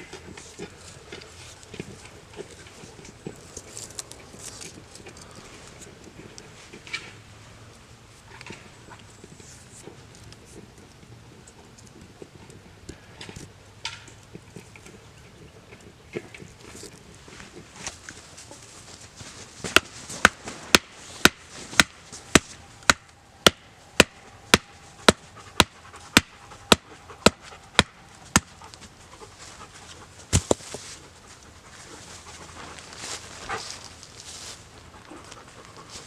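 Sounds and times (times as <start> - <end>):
sharp tool strikes: 19.7 - 28.5.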